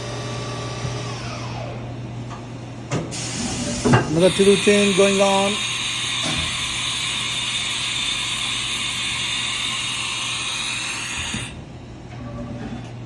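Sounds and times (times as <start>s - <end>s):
faint machine sounds: 0.0s - 13.0s
machine hiss and whine: 3.1s - 11.6s.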